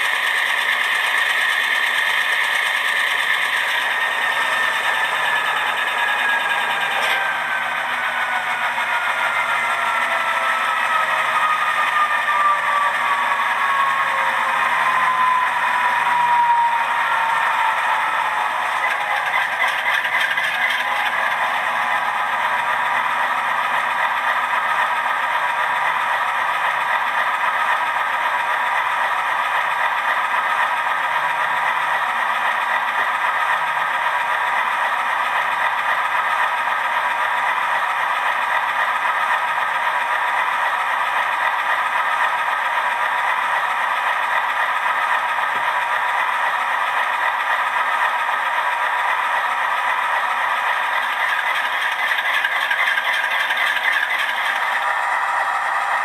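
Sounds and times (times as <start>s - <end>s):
diesel engine sound from small speaker: 0.0s - 56.0s.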